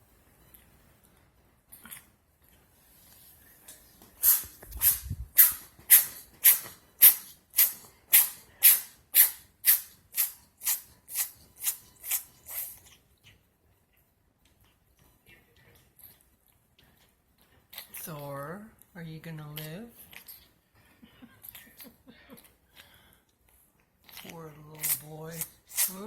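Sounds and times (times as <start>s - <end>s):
kitten sneezing: 4.2s - 12.8s, 24.8s - 26.0s.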